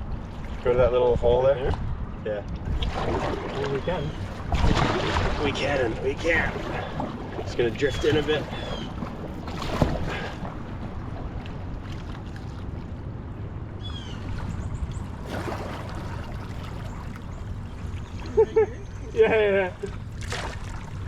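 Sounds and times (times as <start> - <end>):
wind and water rumble: 0.0 - 21.0
paddle swishing in water: 2.7 - 12.9, 14.2 - 18.4, 19.9 - 21.0.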